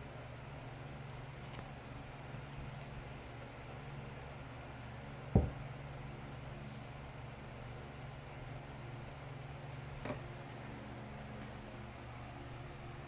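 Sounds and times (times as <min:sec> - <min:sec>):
steady low hum: 0:00.0 - 0:13.0
small bell jingling: 0:03.2 - 0:03.9, 0:05.4 - 0:09.3
sharp thump: 0:05.4 - 0:05.6.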